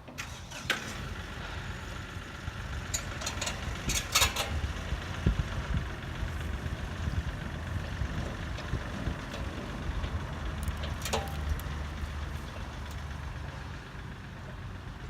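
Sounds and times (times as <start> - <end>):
engine idling: 0.0 - 15.0
sharp clicks and clanks: 2.8 - 5.8, 8.2 - 13.1.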